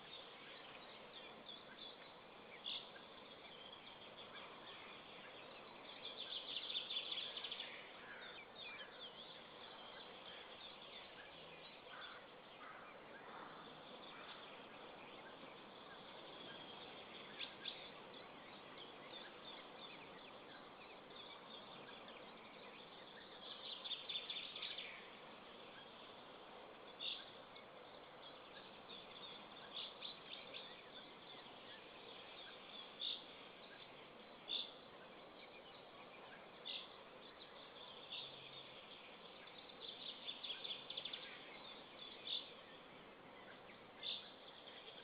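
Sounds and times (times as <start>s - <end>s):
faint steady hiss: 0.0s - 45.0s
small birds chirping and singing: 0.0s - 45.0s.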